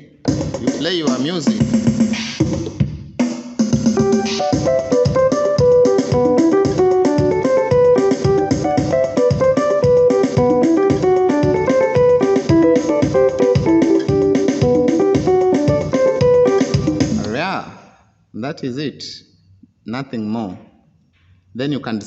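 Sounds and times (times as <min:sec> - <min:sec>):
keyboard playing plucked notes: 0:03.9 - 0:17.5.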